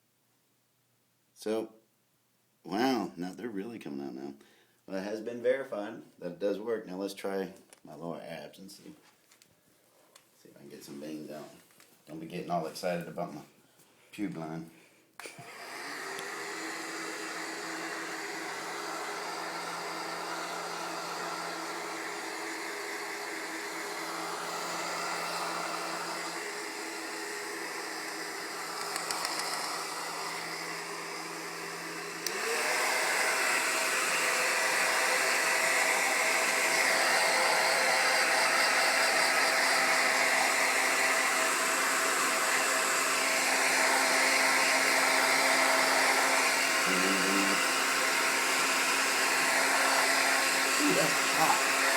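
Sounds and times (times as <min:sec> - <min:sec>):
hair dryer blowing: 0:15.2 - 0:51.9.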